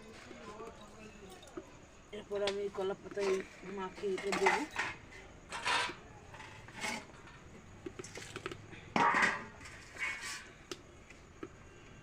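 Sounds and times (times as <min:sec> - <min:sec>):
food handling scraping and rustling: 0:02.7 - 0:10.6.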